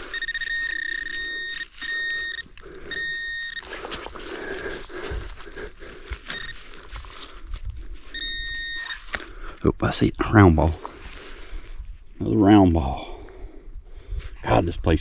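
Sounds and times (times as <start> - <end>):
metal detector high-pitched tone: 0.0 - 3.8, 6.3 - 6.6, 8.1 - 9.0.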